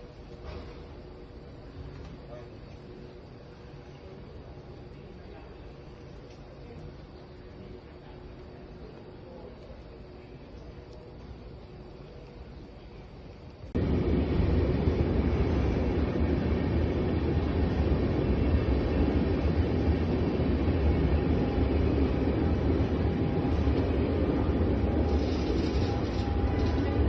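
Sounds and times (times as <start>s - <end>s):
train rumbling: 11.0s - 27.0s.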